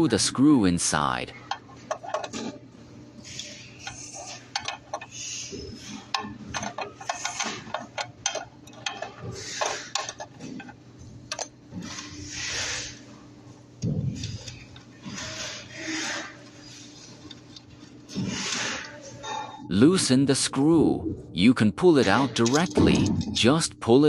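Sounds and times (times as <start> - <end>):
wrench clinking on metal nut: 3.8 - 5.2, 6.1 - 10.7.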